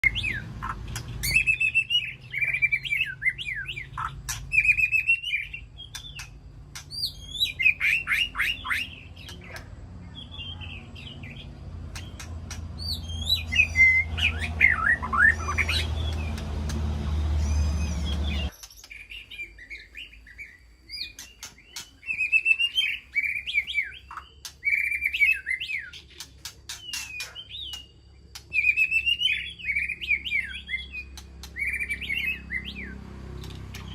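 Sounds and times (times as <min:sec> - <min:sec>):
bird singing whistled phrases: 0:00.0 - 0:12.2, 0:12.8 - 0:16.4, 0:17.4 - 0:33.0
sharp bird clicks: 0:00.1 - 0:09.8, 0:11.8 - 0:17.1, 0:21.0 - 0:22.6, 0:23.3 - 0:30.2, 0:30.8 - 0:33.9.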